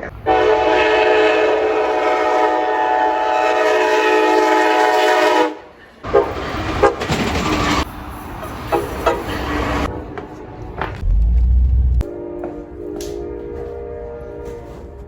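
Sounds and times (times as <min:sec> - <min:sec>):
moving train rumble: 0:00.0 - 0:15.0
train horn blast: 0:00.2 - 0:07.0, 0:12.0 - 0:15.0.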